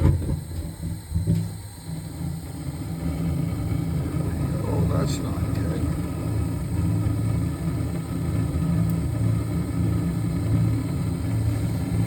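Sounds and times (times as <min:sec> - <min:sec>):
gas burners rumbling: 0:00.0 - 0:12.0.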